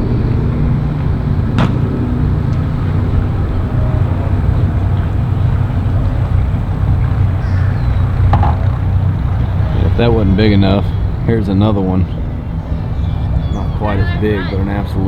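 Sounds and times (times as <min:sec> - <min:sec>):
motorboat engines rumbling: 0:00.0 - 0:15.0.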